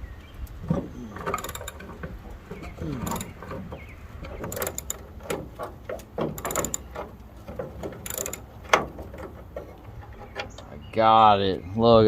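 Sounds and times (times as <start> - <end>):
ratchet wrench clicking: 1.3 - 1.9, 3.0 - 3.4, 4.3 - 5.5, 6.3 - 7.1, 7.9 - 8.5.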